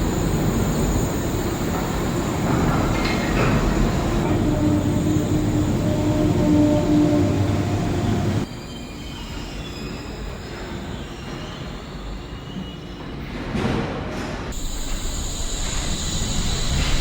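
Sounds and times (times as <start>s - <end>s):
train rumble: 0.0s - 8.5s, 13.2s - 17.0s
suspension railway car humming: 0.0s - 12.6s, 14.5s - 17.0s.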